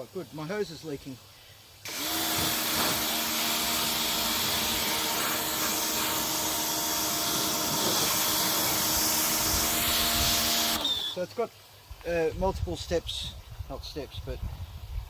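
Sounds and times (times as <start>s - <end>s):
high-pressure water jet hiss: 0.0s - 11.8s
pressure washer motor hum: 1.9s - 11.2s.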